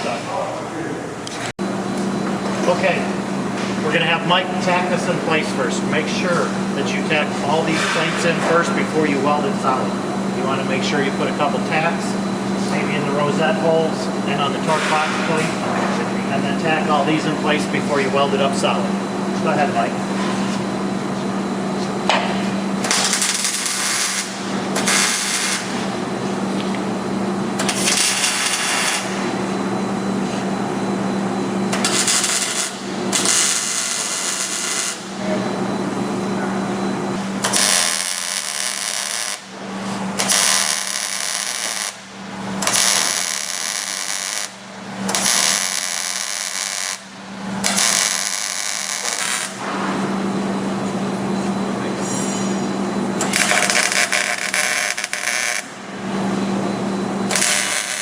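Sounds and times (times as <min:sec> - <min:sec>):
steady hum: 0:00.0 - 0:58.0
welding arc crackling: 0:22.8 - 0:26.0, 0:27.6 - 0:29.2, 0:31.7 - 0:35.2, 0:37.3 - 0:49.6, 0:53.2 - 0:56.1, 0:57.2 - 0:58.0.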